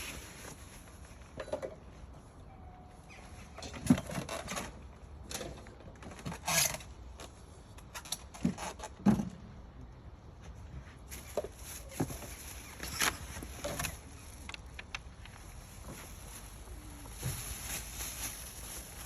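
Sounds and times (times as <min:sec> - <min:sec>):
scraping rustle: 0:10.8 - 0:19.0.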